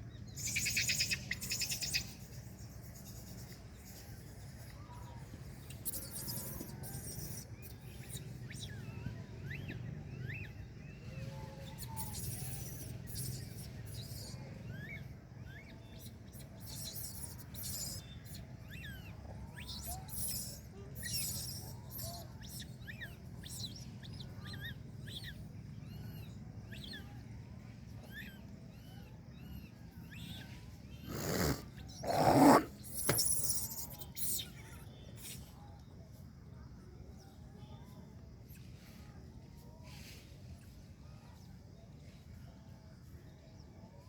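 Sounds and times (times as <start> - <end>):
small birds chirping: 0.0 - 44.0
distant bird calls: 27.9 - 34.6
rustle: 38.5 - 42.5.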